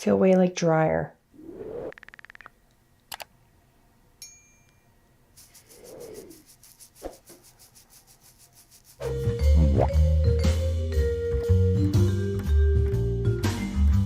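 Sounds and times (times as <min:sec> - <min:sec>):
scattered clicks: 0:01.9 - 0:03.3
faint rubbing: 0:05.4 - 0:09.2.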